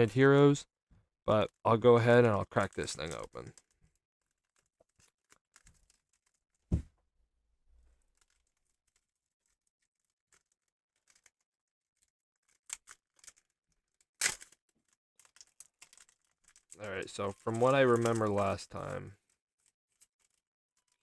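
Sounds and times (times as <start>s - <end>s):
foil pack rustling: 14.2s - 21.0s
foil pack tearing: 16.8s - 19.1s.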